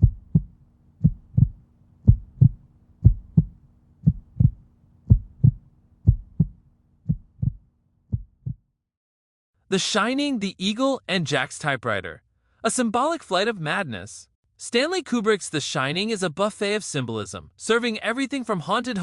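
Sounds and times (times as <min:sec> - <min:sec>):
faint steady hum: 0:00.0 - 0:08.1
heartbeat thumps: 0:00.0 - 0:08.6.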